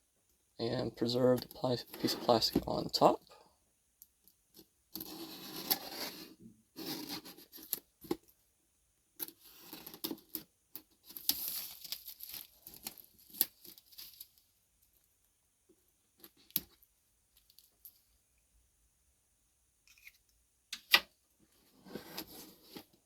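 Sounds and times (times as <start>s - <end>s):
plastic wrap crinkling and tearing: 11.1s - 14.5s.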